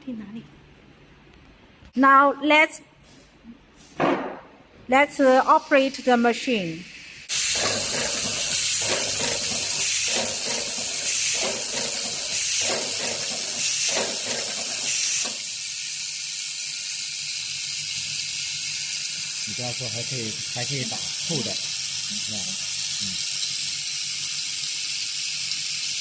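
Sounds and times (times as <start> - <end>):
button attaching machine hissing: 7.0 - 15.8.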